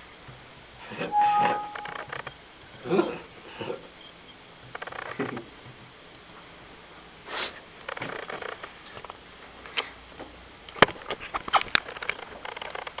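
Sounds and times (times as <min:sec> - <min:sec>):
person sniffing: 0:07.3 - 0:07.6.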